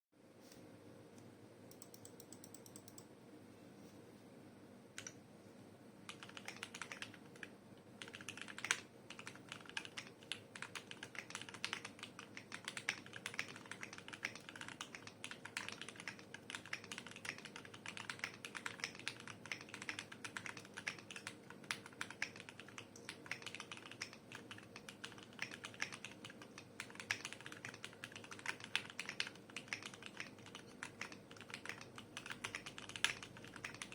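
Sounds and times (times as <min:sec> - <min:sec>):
mechanical keyboard typing: 0:01.7 - 0:03.1, 0:06.1 - 0:33.9.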